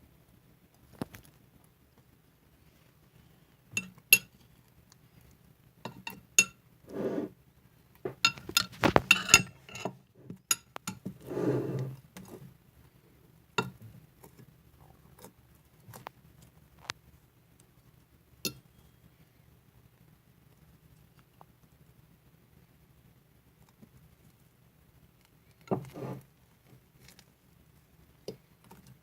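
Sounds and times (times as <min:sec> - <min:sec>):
soft scraping: 0:06.9 - 0:07.4, 0:11.2 - 0:12.5, 0:25.8 - 0:26.3
utensils and dishes clinking: 0:08.3 - 0:10.0.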